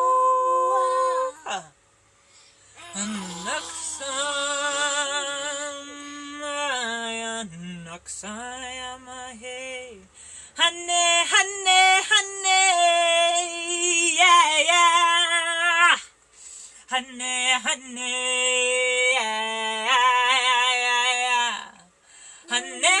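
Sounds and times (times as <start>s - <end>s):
woman singing wordless notes: 0.0s - 1.8s, 2.8s - 9.7s, 22.5s - 23.0s.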